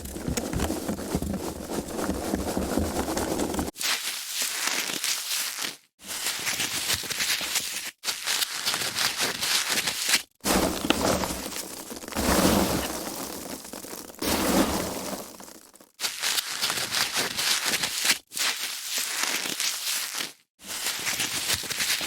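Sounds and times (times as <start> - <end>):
foam packaging crackling: 0.0 - 5.8, 8.3 - 22.0.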